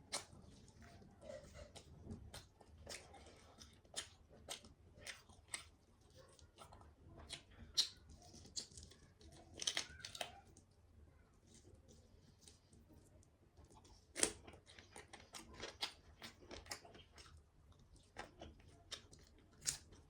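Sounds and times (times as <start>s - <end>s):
wet clicks and smacks: 0.0s - 0.4s, 2.2s - 5.8s, 7.2s - 10.4s
chewing food: 0.0s - 20.0s.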